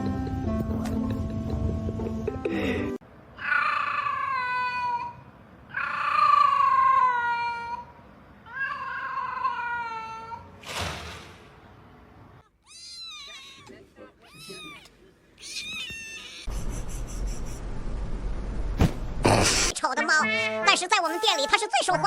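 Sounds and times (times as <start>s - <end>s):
cat meowing: 3.4s - 7.8s, 8.5s - 10.4s, 12.4s - 16.5s.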